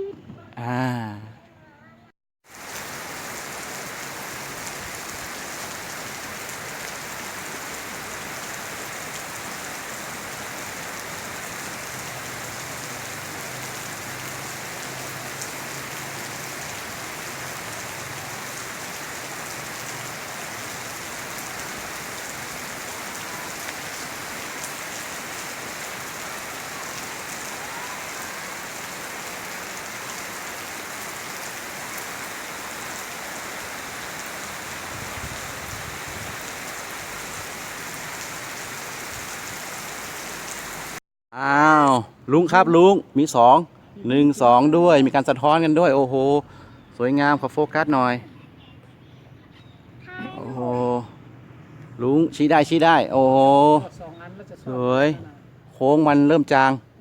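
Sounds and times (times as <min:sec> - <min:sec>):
steady rain falling: 0:02.5 - 0:41.0.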